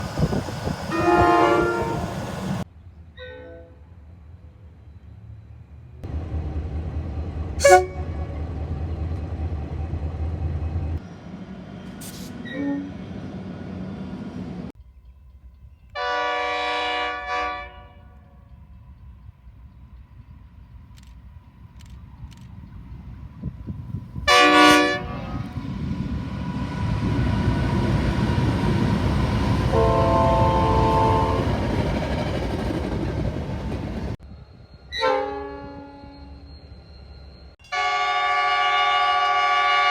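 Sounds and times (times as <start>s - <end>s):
diesel locomotive rumble: 0.0s - 3.1s, 4.1s - 17.4s, 18.1s - 39.9s
locomotive horn blast: 0.9s - 2.6s, 7.5s - 8.5s, 16.0s - 18.4s, 24.3s - 25.6s, 29.6s - 31.7s, 35.0s - 36.3s, 37.7s - 39.9s
brief hiss: 11.9s - 12.5s.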